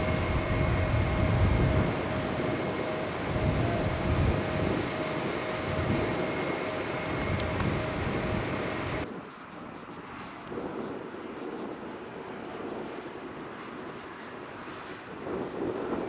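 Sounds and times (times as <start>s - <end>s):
jet engines running: 0.0s - 9.1s.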